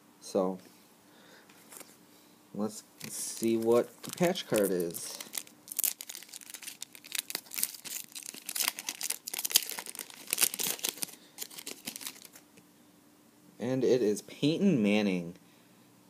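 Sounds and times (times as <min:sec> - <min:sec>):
packaging torn and crinkled: 0:03.0 - 0:12.4.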